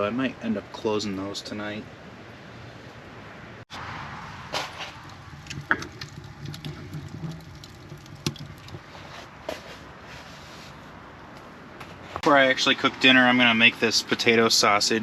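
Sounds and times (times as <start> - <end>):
objects knocking and clicking: 4.5 - 8.9.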